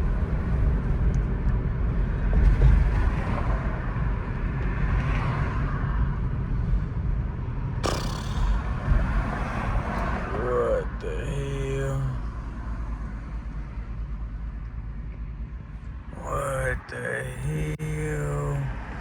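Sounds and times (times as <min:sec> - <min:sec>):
road and wind noise in car: 0:00.0 - 0:07.8, 0:08.7 - 0:10.8, 0:12.1 - 0:16.2
harsh burst of noise: 0:07.8 - 0:08.7.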